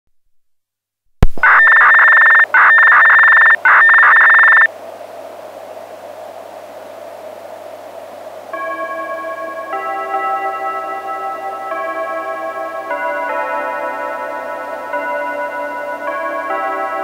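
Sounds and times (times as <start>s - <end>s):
loud electronic tones: 1.2s - 4.7s
radio click: 1.2s - 4.7s
radio channel hiss: 1.2s - 8.5s.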